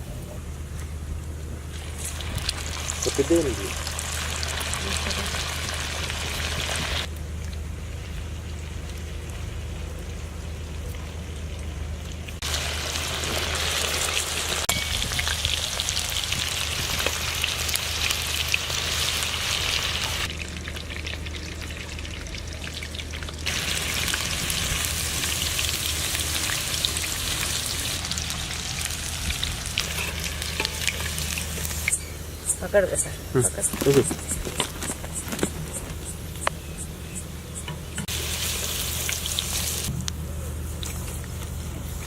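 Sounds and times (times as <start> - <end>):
food deep-frying in hot oil: 1.7 - 36.2, 38.0 - 40.0
steady low hum: 27.3 - 42.0.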